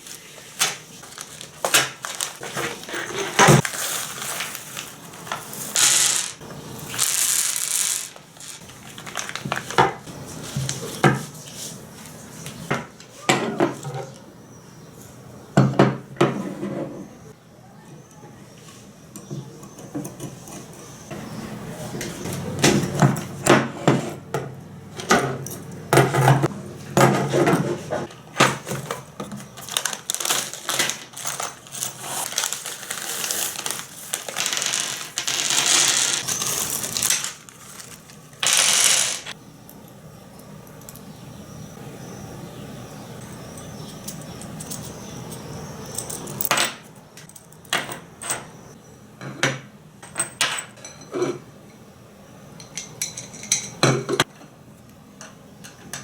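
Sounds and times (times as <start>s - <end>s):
metal tools clinking: 28.7s - 39.4s, 43.2s - 48.6s, 52.6s - 53.8s.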